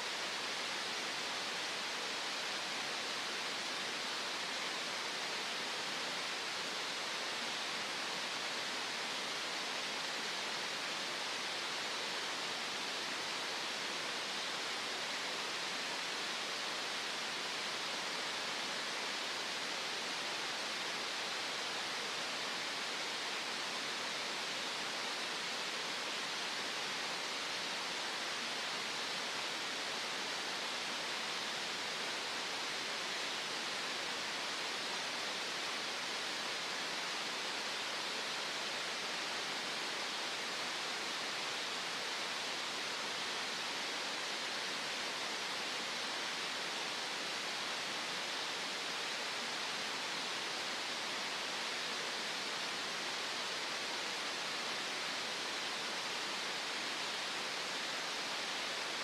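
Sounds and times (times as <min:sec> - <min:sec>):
steady synthetic hiss: 0:00.0 - 0:59.0.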